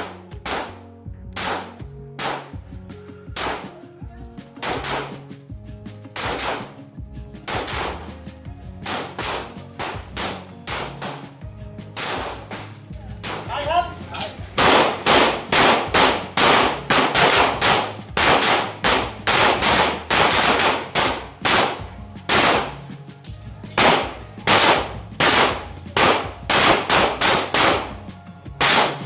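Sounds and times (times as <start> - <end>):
handgun shots: 0.0 - 0.8, 1.4 - 2.6, 3.4 - 3.7, 4.6 - 5.3, 6.2 - 6.8, 7.5 - 8.1, 8.8 - 11.3, 12.0 - 22.8, 23.7 - 28.0, 28.6 - 29.0.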